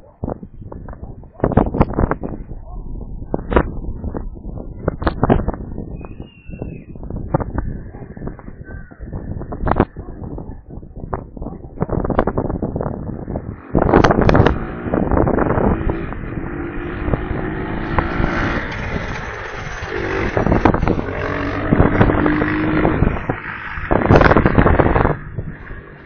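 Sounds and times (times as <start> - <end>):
strong gusty wind on microphone: 0.0 - 26.0
sharp knocks and rattles: 17.8 - 25.9.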